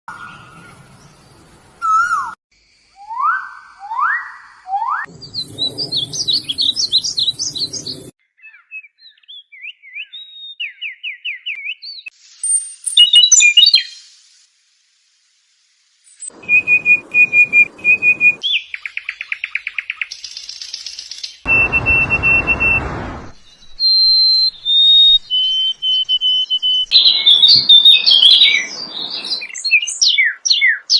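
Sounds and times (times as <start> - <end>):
songbirds singing: 5.1 - 14.0, 16.1 - 22.6, 23.3 - 30.9.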